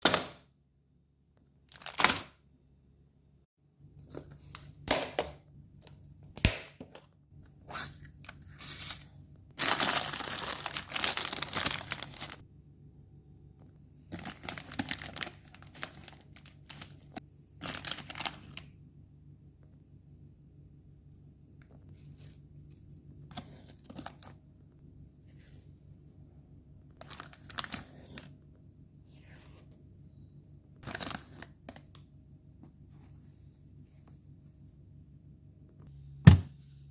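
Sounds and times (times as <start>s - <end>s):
crinkling and tearing: 9.6s - 12.4s.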